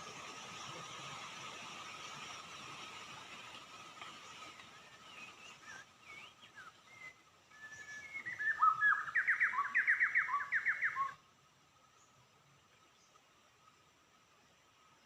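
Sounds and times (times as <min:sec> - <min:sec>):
bird singing whistled notes: 0:04.2 - 0:11.2.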